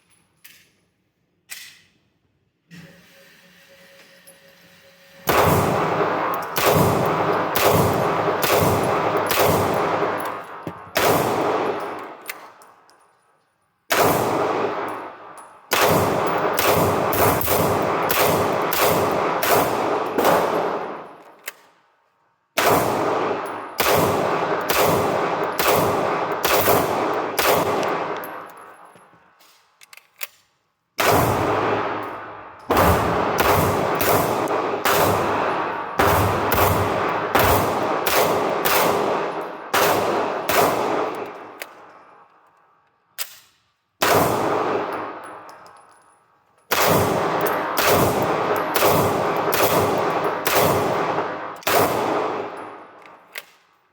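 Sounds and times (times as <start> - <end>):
pistol shots with long echo: 5.3 - 12.7, 13.9 - 21.4, 22.6 - 28.8, 31.0 - 42.3, 44.0 - 45.7, 46.7 - 53.3.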